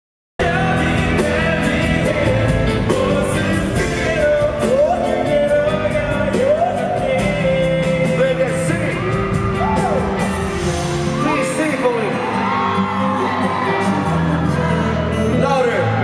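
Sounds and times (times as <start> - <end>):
band with steady drum beat: 0.4 - 12.6.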